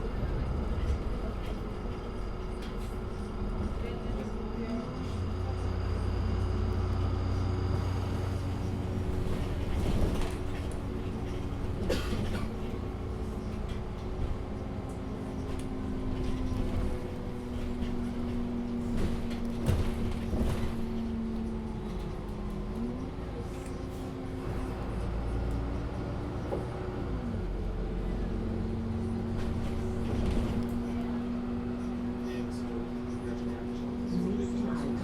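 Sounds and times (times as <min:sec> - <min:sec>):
bus diesel engine droning: 0:00.0 - 0:35.0
road noise: 0:00.0 - 0:35.0
bus body knocks and rattles: 0:08.8 - 0:22.8, 0:28.6 - 0:31.3.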